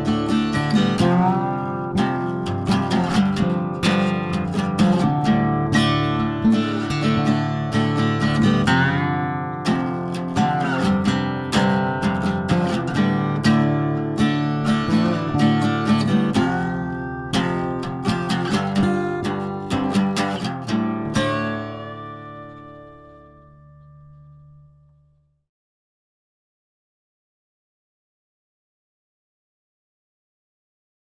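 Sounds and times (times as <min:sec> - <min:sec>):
acoustic guitar picking and strumming: 0:00.0 - 0:24.6.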